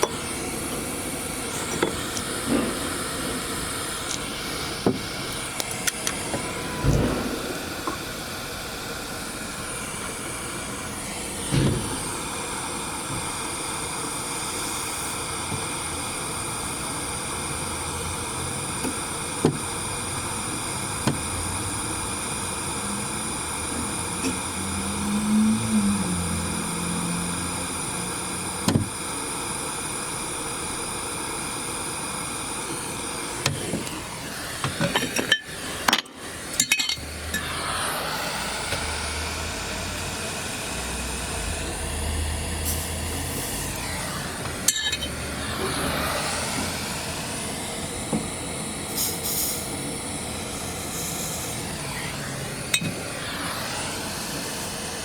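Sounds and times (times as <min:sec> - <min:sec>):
mechanical hum: 0:00.0 - 0:55.0
metal tools clinking: 0:36.6 - 0:37.0, 0:44.7 - 0:45.1.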